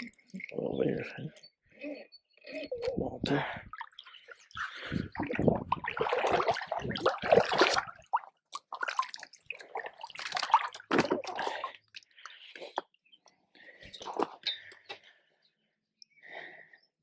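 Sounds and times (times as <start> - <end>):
water dripping: 0.0 - 1.4, 2.8 - 12.5
water splashing and sloshing: 2.8 - 12.8.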